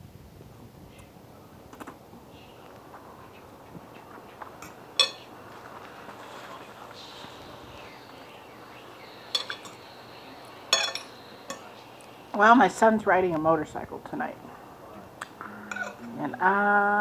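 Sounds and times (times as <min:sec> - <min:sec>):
fork clinking on plate: 0:04.6 - 0:05.3, 0:09.3 - 0:09.9, 0:10.7 - 0:11.8, 0:15.7 - 0:16.1.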